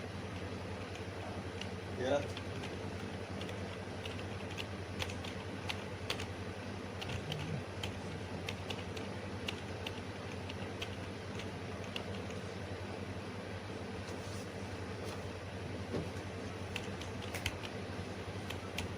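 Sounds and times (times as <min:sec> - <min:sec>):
computer keyboard keys clicking: 0:00.3 - 0:06.3, 0:07.0 - 0:12.4, 0:16.7 - 0:17.8, 0:18.4 - 0:18.9.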